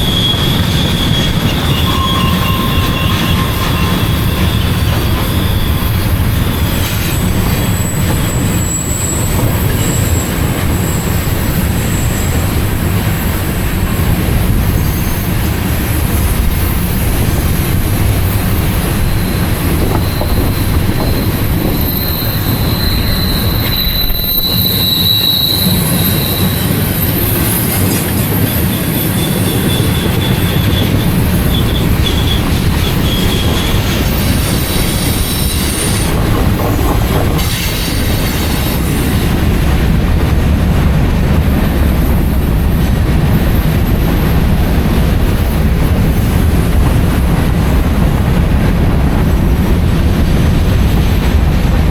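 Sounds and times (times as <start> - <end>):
wheel flanges squealing: 0.0 - 39.3
freight train cars rumbling: 0.0 - 51.9.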